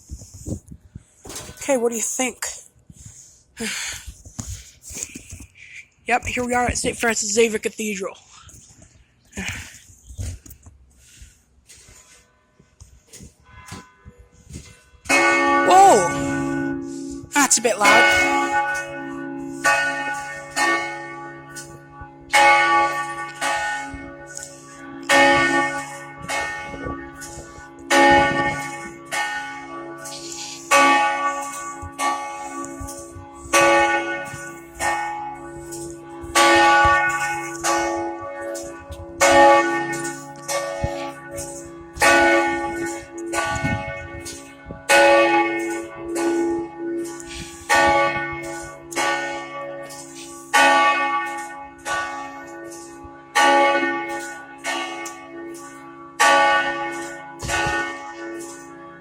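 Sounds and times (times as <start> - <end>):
church bell tolling: 13.4 - 59.0.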